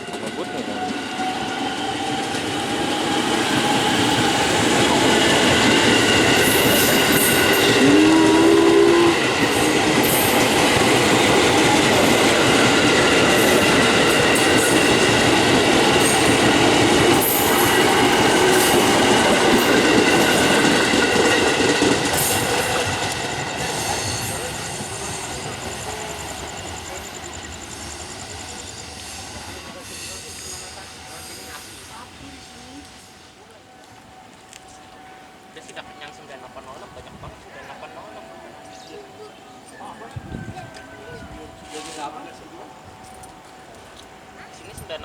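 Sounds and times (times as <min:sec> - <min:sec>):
train wheels clattering over rails: 0:00.0 - 0:33.0
train horn note: 0:07.4 - 0:09.8.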